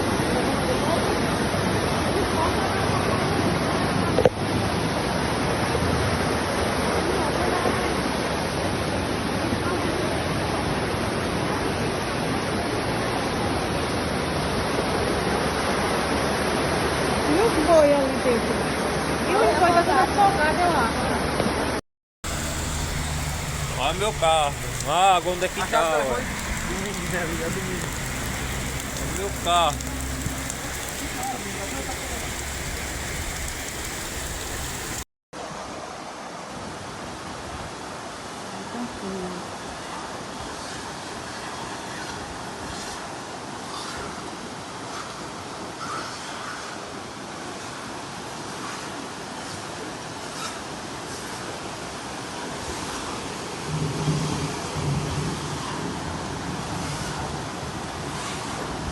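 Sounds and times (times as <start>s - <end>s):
rushing floodwater: 0.0s - 43.6s
floodwater rushing: 22.2s - 35.1s
heavy rain: 22.2s - 35.1s.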